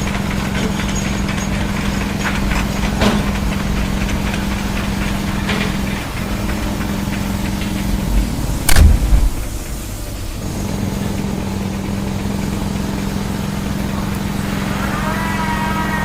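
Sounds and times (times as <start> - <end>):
loud knock: 8.7 - 9.8.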